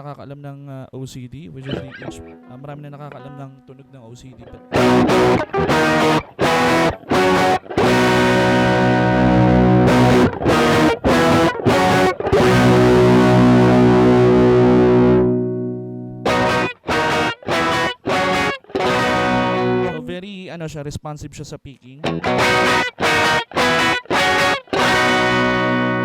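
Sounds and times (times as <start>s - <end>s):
distorted electric guitar chords: 1.7s - 2.6s, 4.5s - 20.1s, 22.0s - 26.0s.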